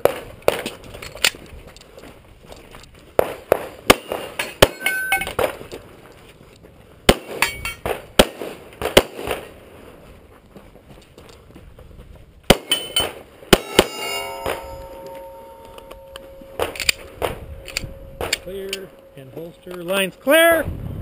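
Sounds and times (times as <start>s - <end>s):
metallic ring: 4.4s - 5.4s, 7.4s - 7.8s, 12.7s - 20.6s
pistol shots: 7.1s - 9.5s, 12.5s - 15.4s.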